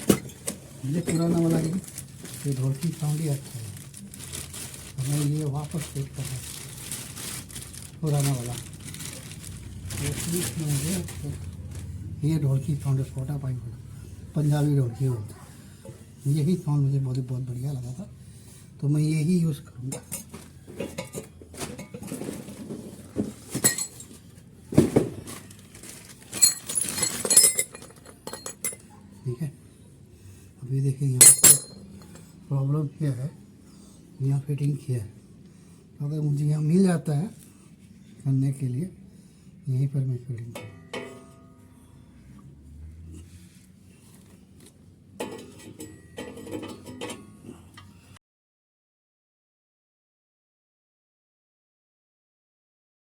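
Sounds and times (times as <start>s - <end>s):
metal clinks and knocks: 23.5s - 24.3s, 26.3s - 28.9s, 31.2s - 32.2s, 40.6s - 41.7s, 45.2s - 47.5s
sharp ringing metal strikes: 40.6s - 41.7s
metal exhaust pipe clanking: 40.6s - 41.8s, 45.2s - 47.9s.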